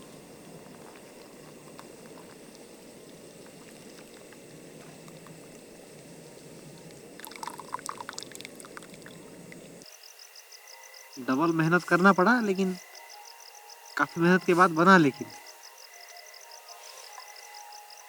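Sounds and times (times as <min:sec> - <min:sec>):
tea being poured: 0:07.0 - 0:09.8.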